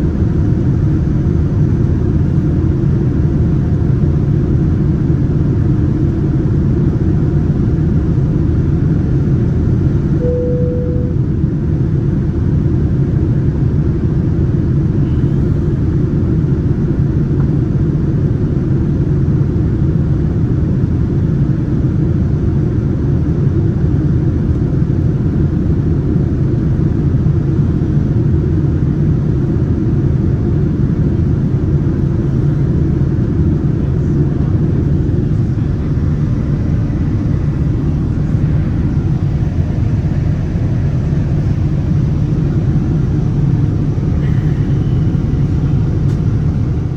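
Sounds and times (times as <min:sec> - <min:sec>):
jet engines rumbling in cabin: 0:00.0 - 0:46.9.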